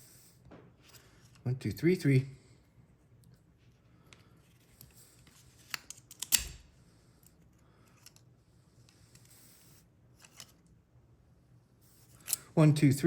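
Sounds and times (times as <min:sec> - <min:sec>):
small metallic lock clicks: 0:05.7 - 0:06.7.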